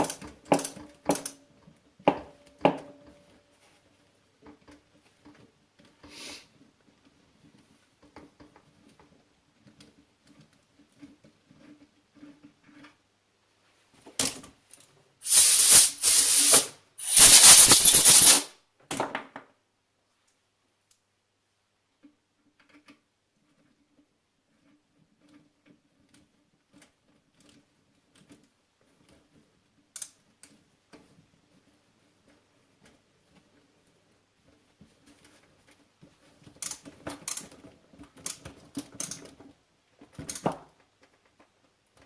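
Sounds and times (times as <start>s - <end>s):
loud hissing bursts: 15.2s - 18.5s.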